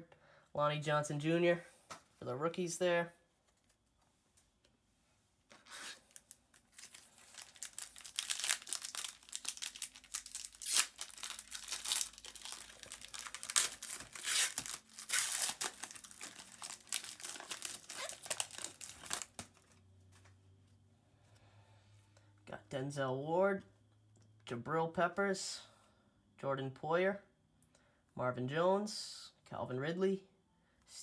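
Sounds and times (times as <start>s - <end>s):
wrapper tearing and crinkling: 5.5s - 19.8s.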